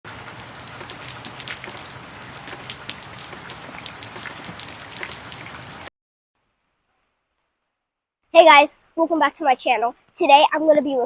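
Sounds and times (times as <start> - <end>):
rain falling: 0.0 - 5.9.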